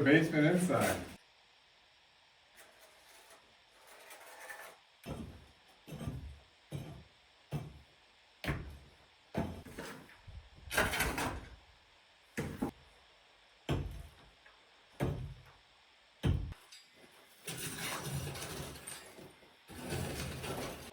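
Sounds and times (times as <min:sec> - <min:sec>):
irregular knocks and thuds: 0:13.7 - 0:14.2, 0:16.2 - 0:16.6.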